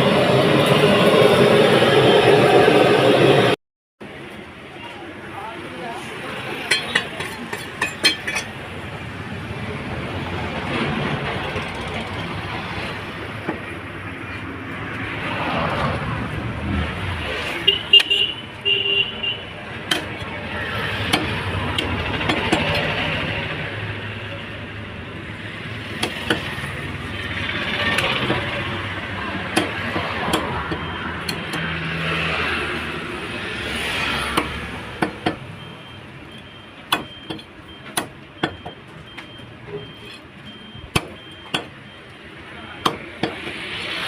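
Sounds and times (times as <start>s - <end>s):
passing road traffic: 0.0s - 44.0s.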